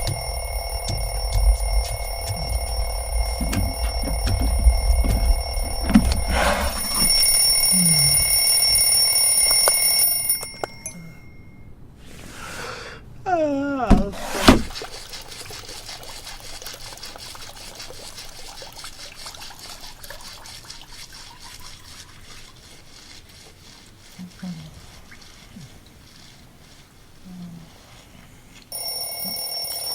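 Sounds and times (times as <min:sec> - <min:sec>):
alarm clock ringing: 0:00.0 - 0:11.7, 0:28.7 - 0:29.9.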